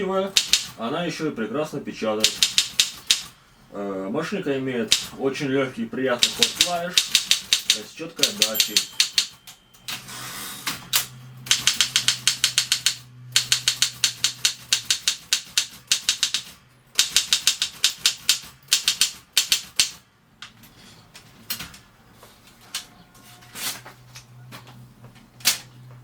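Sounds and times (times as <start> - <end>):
typewriter keys striking: 0.3 - 0.8, 2.2 - 3.3, 4.8 - 5.2, 6.1 - 10.0, 10.9 - 20.0.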